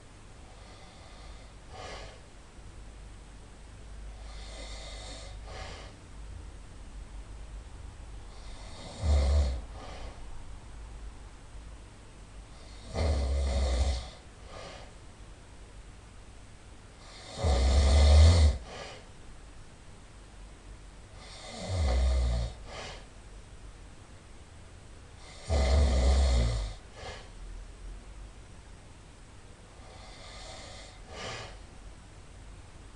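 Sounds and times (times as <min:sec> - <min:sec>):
person snoring loudly: 0:08.3 - 0:10.1, 0:12.6 - 0:14.7, 0:17.0 - 0:19.0, 0:21.2 - 0:23.0, 0:25.2 - 0:27.3, 0:29.8 - 0:31.6.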